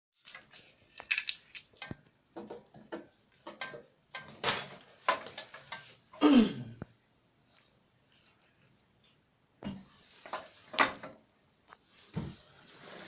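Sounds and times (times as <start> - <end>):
metallic clinking: 0.2 - 2.0.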